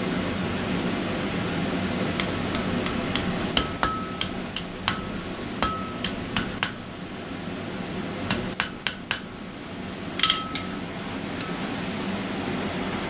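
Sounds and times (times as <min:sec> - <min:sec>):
hammer striking metal on anvil: 0:02.2 - 0:06.8, 0:08.3 - 0:09.3, 0:10.2 - 0:10.8
anvil ringing: 0:03.6 - 0:04.3, 0:04.9 - 0:06.8, 0:10.2 - 0:10.8.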